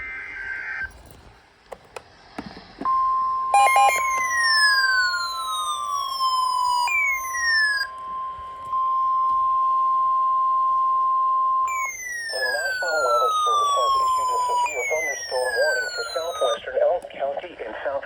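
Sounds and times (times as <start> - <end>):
short beeps: 2.8 - 4.7, 6.8 - 16.6
steady high alarm tone: 2.9 - 16.6
whistles gliding downward in pitch: 2.9 - 16.6.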